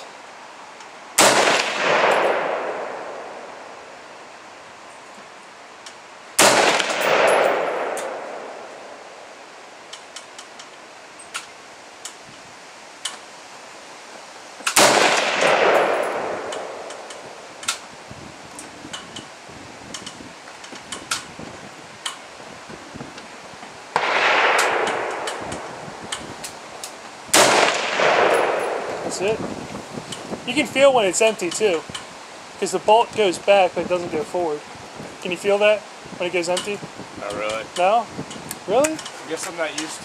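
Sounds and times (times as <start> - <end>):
rifle shots with echo: 1.2 - 3.8, 6.4 - 9.2, 14.7 - 17.1, 24.0 - 25.8, 27.3 - 29.1.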